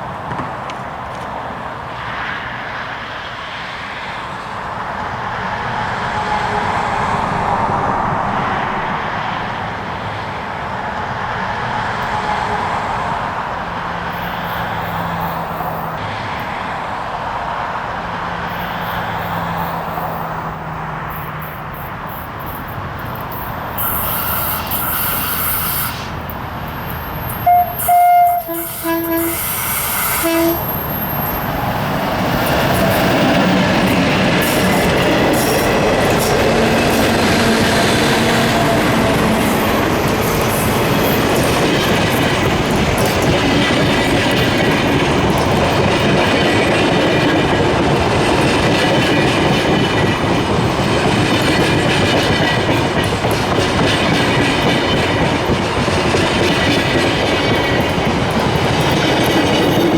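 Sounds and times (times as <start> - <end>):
train rumbling on rails: 0.0 - 59.9
train horn blasts: 6.0 - 7.3, 27.2 - 31.3.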